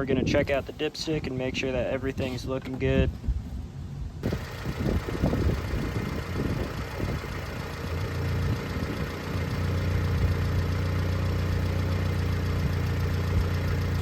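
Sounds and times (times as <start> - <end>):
car engine idling: 4.2 - 14.0.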